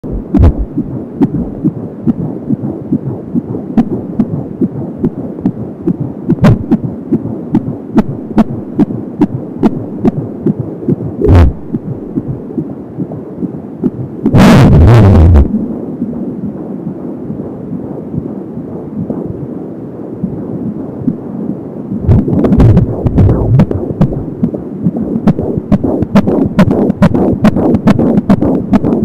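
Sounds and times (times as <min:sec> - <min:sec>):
fast fetal heartbeat pulsing: 0:00.0 - 0:18.4, 0:19.0 - 0:19.5, 0:20.2 - 0:29.0.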